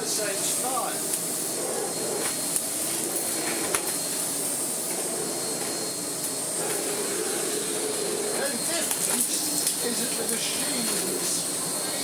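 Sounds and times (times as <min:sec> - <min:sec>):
vacuum cleaner whine and hiss: 0:00.0 - 0:12.0.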